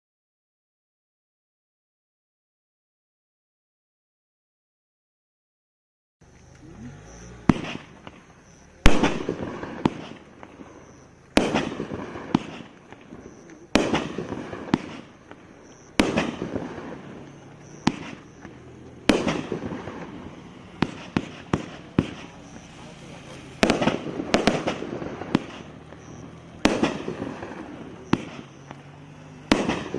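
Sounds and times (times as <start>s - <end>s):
fireworks bangs: 6.2s - 29.9s
fireworks crackle: 6.2s - 29.9s
small fireworks pops: 6.2s - 29.9s.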